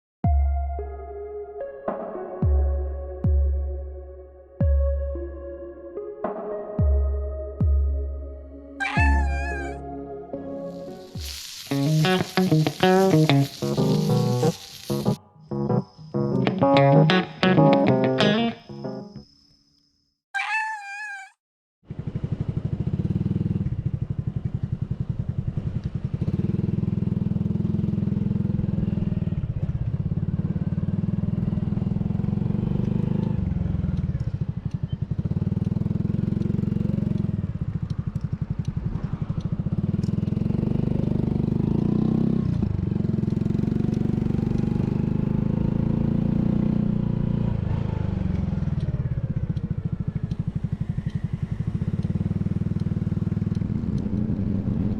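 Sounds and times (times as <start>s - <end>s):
motorcycle engine running: 21.9s - 54.9s.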